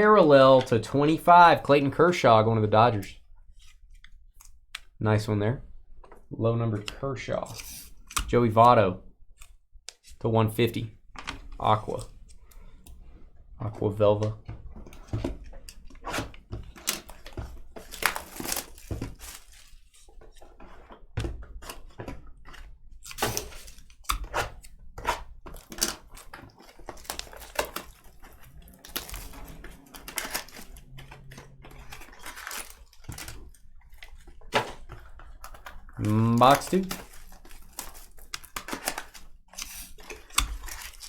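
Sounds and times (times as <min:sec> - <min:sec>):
packaging tearing and crinkling: 0:16.0 - 0:20.2, 0:23.0 - 0:41.0.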